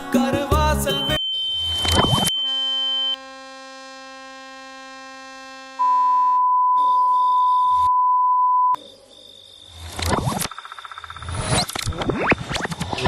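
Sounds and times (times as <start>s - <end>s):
high-pitched beep: 0.8s - 3.2s, 5.8s - 8.8s
steady buzzing tone: 1.2s - 6.4s.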